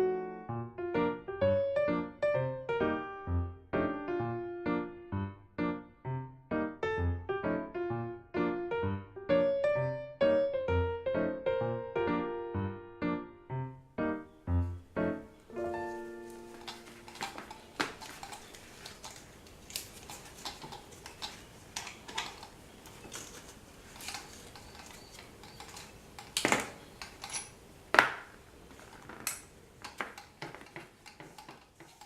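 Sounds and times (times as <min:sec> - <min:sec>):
small metal parts clinking: 0:16.3 - 0:27.6.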